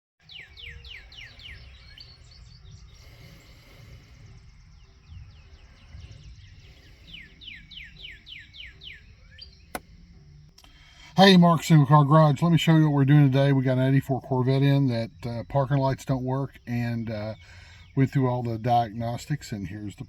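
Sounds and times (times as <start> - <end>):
bird singing whistled notes: 0.2 - 12.7
low steady background rumble: 0.5 - 20.0.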